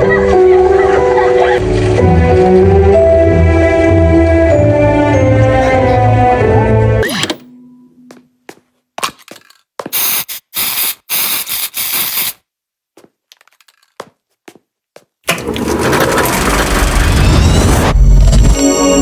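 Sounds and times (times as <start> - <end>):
music: 0.0 - 8.4, 17.2 - 19.0.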